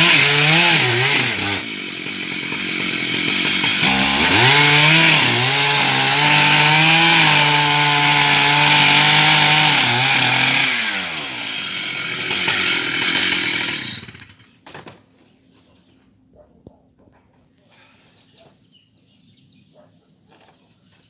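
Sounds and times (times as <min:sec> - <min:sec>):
chainsaw cutting into tree: 0:00.0 - 0:14.6.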